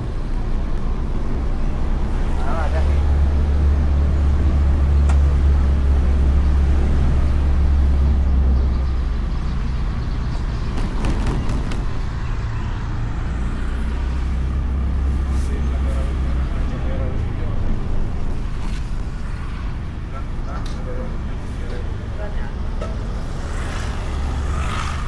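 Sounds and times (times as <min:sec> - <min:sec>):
wind: 0:00.0 - 0:25.0
scooter engine drone: 0:22.9 - 0:25.0.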